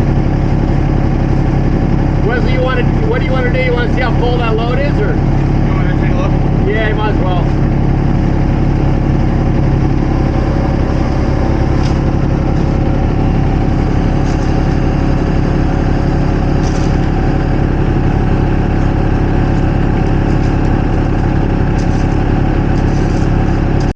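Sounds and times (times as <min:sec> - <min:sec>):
diesel engine running: 0:00.0 - 0:23.9.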